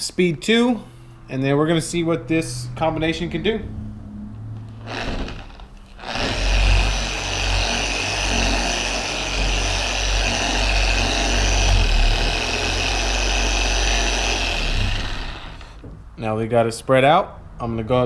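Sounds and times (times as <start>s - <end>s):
polisher running: 4.8s - 15.8s.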